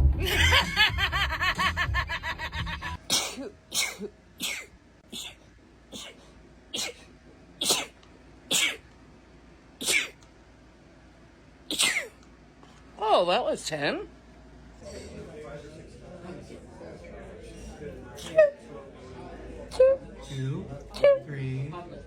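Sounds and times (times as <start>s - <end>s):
woman sneezing: 3.1s - 6.2s, 6.8s - 8.8s, 11.7s - 12.2s.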